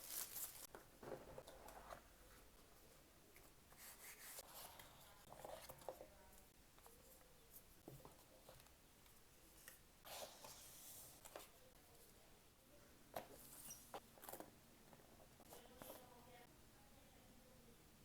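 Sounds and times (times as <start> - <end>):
paper and plastic rustling: 0.0 - 2.7.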